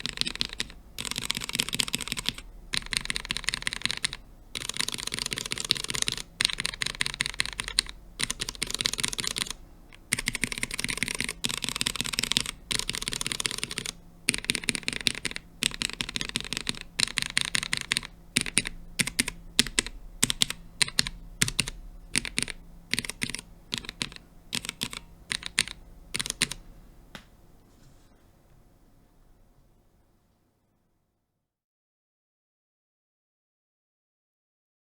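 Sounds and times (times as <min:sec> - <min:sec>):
mechanical keyboard typing: 0:00.0 - 0:26.6.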